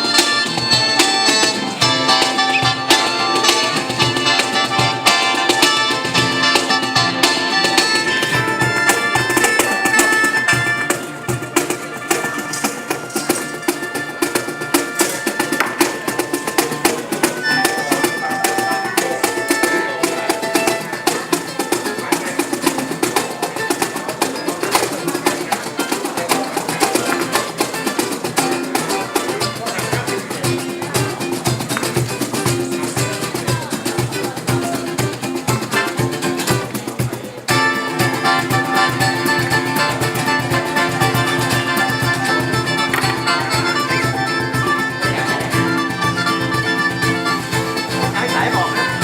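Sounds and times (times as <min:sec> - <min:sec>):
live band playing: 0:00.0 - 0:49.0.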